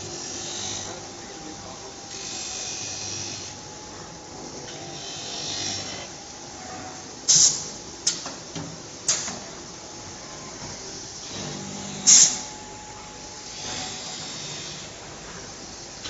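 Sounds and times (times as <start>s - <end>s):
motor hum: 10.2s - 16.0s.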